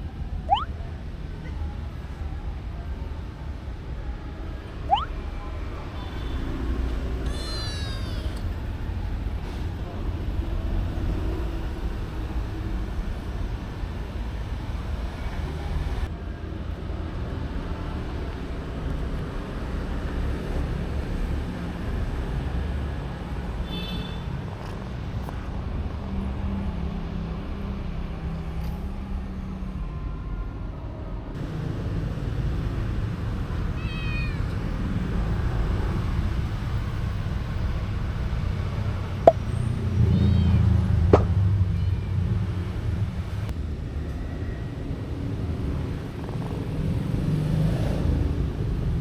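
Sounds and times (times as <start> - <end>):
kitten meowing: 0.5 - 0.7, 4.9 - 5.1, 7.2 - 8.4, 33.8 - 34.4, 40.0 - 40.7.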